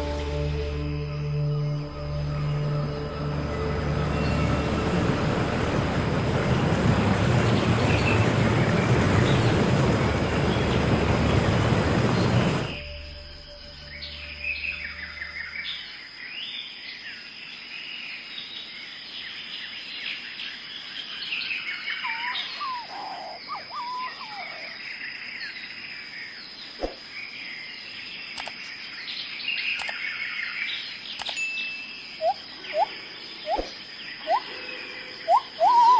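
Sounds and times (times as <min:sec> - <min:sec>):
steady high-pitched tone: 0:00.0 - 0:06.7
birds chirping and twittering: 0:02.3 - 0:35.9
low whistled bird notes: 0:32.2 - 0:35.9.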